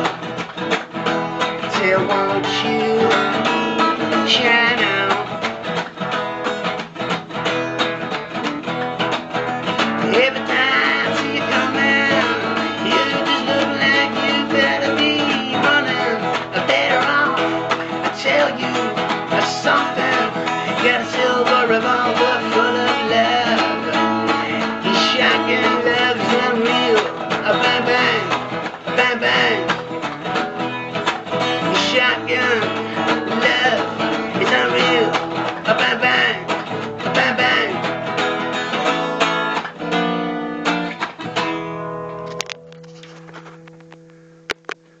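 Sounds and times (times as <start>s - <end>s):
guitar strumming: 0.0s - 45.0s
click: 43.7s - 44.8s.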